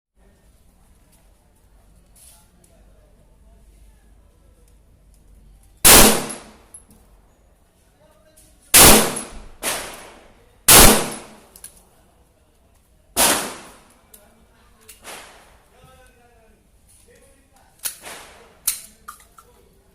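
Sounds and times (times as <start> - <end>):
pistol shots: 5.8 - 6.6, 8.8 - 11.5, 13.2 - 13.8, 15.0 - 15.5
faint gunshot report: 8.8 - 11.4, 13.2 - 13.8.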